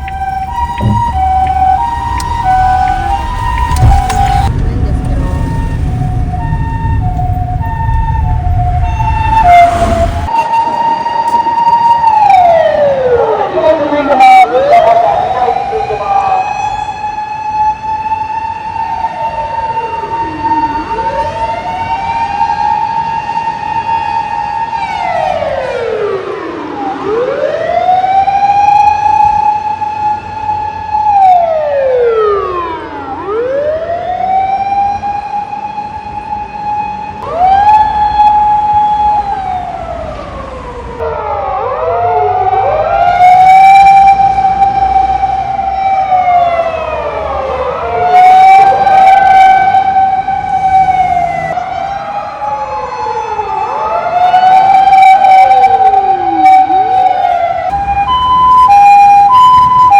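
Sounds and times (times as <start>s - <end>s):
emergency vehicle siren wailing: 0.0s - 59.9s
second siren wailing: 0.0s - 59.9s.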